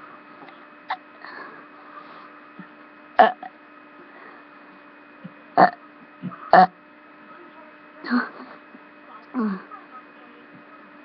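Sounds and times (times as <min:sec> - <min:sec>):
electrical hum: 0:00.0 - 0:11.0
person burping: 0:03.2 - 0:03.5, 0:05.6 - 0:06.8.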